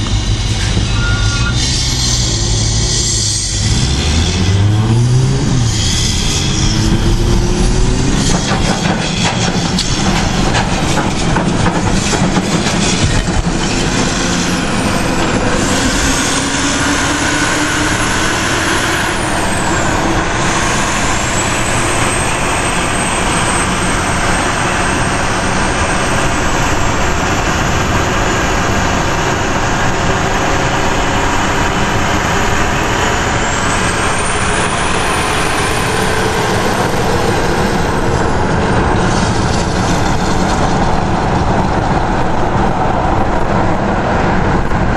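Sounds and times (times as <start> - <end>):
diesel truck engine running: 0.0 - 44.9
turbocharger whistle: 0.1 - 9.2.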